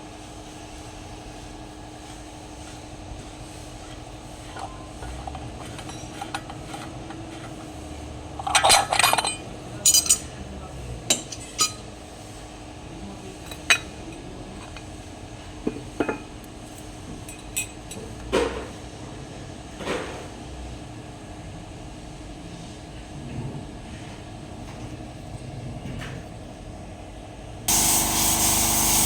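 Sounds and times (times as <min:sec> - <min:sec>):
metal tools clinking and knocking: 0:04.6 - 0:07.6, 0:08.4 - 0:10.3, 0:11.1 - 0:11.8.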